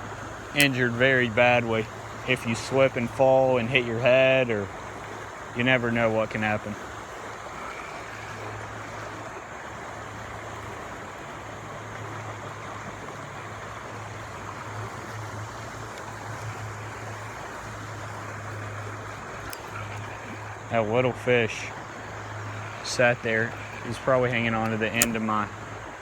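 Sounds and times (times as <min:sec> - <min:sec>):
river water rushing over rocks: 0:00.0 - 0:26.0
steady low hum: 0:13.3 - 0:26.0.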